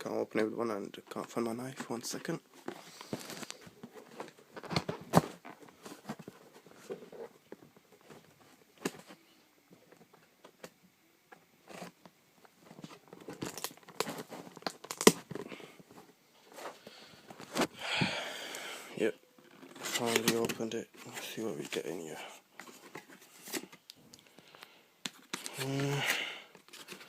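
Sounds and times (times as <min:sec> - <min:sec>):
cardboard packaging tearing and rustling: 0:13.2 - 0:15.4.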